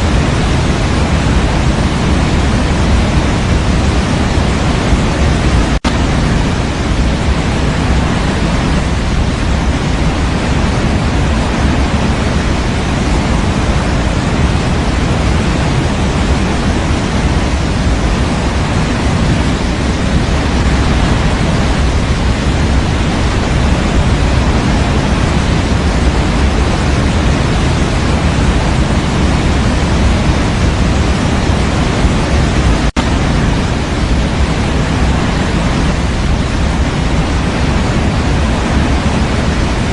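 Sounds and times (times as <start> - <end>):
electronic white noise hiss: 0.0 - 39.9.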